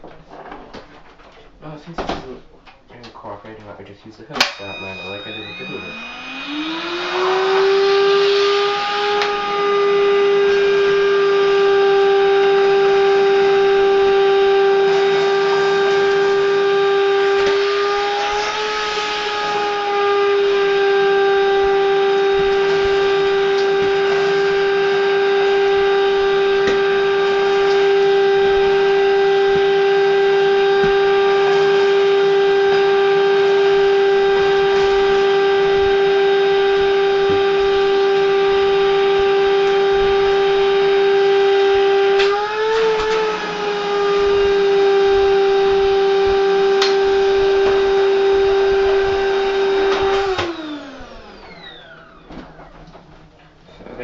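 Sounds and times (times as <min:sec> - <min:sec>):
vacuum cleaner motor whine: 0:04.4 - 0:54.0.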